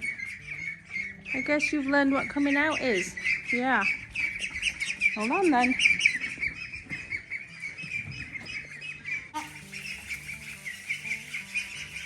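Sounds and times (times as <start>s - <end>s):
chicks peeping: 0.0s - 12.0s.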